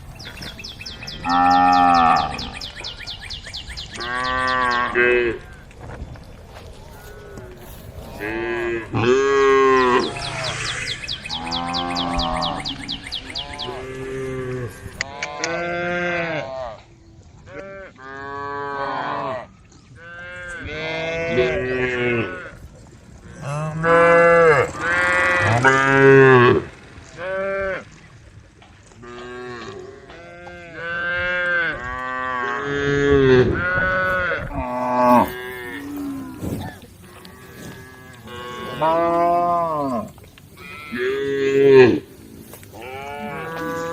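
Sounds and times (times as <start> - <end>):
cattle mooing: 0.2 - 2.7, 7.0 - 16.8, 23.3 - 28.0, 29.0 - 43.9.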